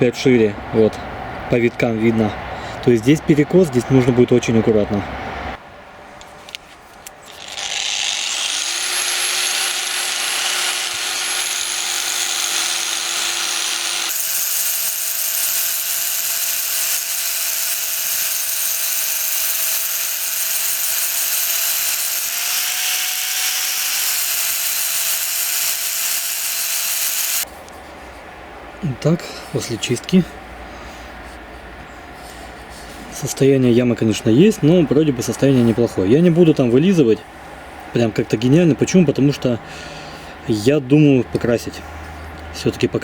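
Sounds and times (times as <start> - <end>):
wire brush scratching metal: 7.2 - 27.4
power tool motor whine: 7.3 - 27.4.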